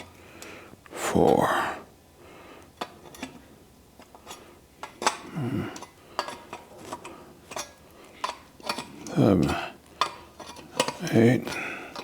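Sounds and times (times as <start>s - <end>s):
metal tools clinking on rack: 10.0s - 12.0s.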